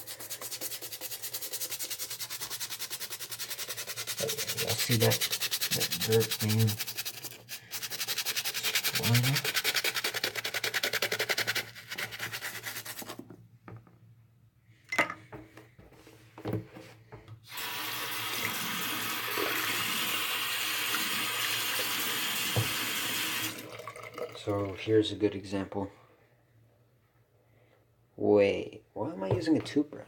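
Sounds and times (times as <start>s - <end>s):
brush scrubbing a sneaker: 0.0s - 13.3s
tap running into a sink: 21.8s - 23.6s.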